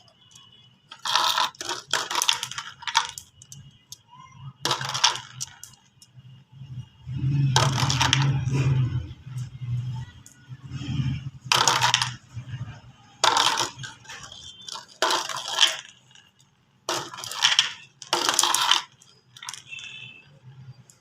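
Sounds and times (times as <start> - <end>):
marbles rattling down plastic track: 0.2 - 4.0, 4.6 - 6.1, 7.4 - 8.8, 11.3 - 20.2.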